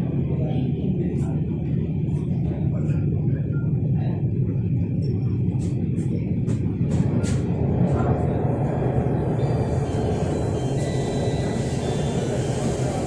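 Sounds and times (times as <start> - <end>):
train carriage rumbling: 0.0 - 13.0.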